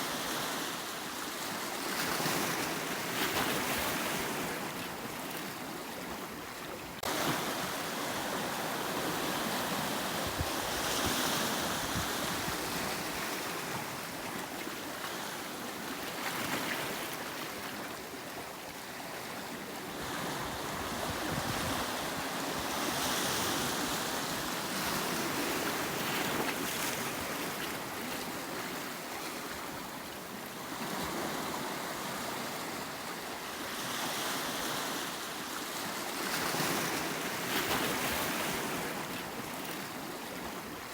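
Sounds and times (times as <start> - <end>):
waves breaking on rocky shore: 7.0 - 17.8.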